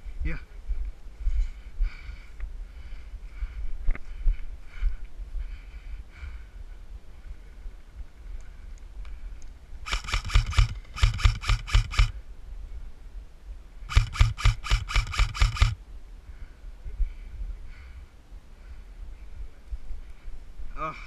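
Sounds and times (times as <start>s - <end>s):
airsoft gun shots: 9.9s - 12.1s, 13.9s - 15.8s.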